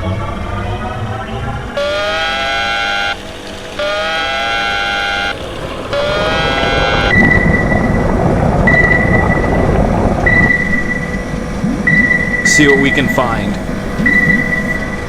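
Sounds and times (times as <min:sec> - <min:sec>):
rising dive alarm horn: 0:00.0 - 0:15.0
steady rumbling: 0:00.0 - 0:15.0
high electronic beep: 0:06.0 - 0:08.0, 0:10.3 - 0:11.2, 0:11.9 - 0:13.4, 0:14.0 - 0:15.0.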